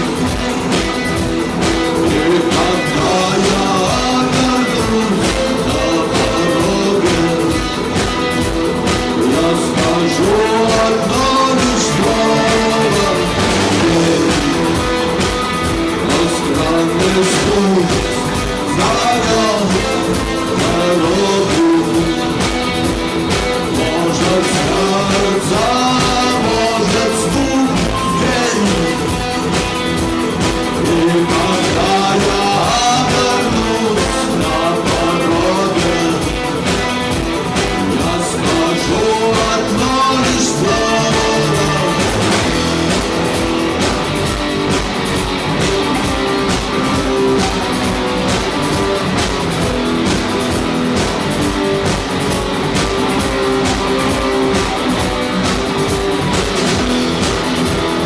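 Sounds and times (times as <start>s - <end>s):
guitar: 0.0s - 58.0s
steady drum beat: 0.0s - 58.0s
person singing: 1.6s - 43.3s.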